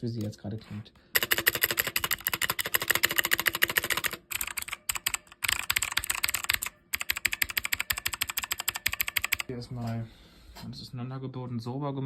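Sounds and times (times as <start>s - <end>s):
mechanical keyboard typing: 1.2s - 9.5s.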